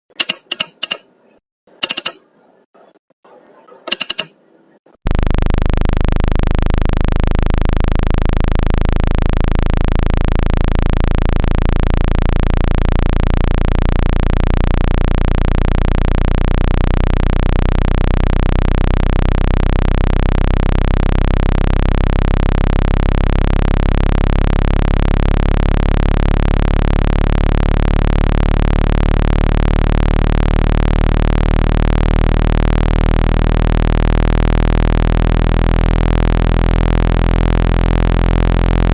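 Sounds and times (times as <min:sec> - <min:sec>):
low buzzing speaker-cleaning tone: 0:05.1 - 0:38.9.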